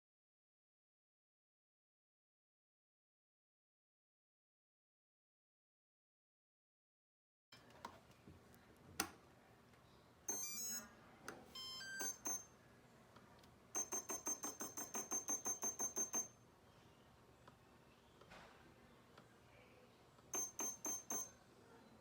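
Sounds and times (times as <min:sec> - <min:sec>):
drone motor beep tones: 0:10.3 - 0:10.8, 0:11.6 - 0:12.5, 0:13.8 - 0:16.4, 0:20.3 - 0:21.3
fast run of high beeps: 0:11.6 - 0:12.5, 0:13.8 - 0:16.4, 0:20.3 - 0:21.3.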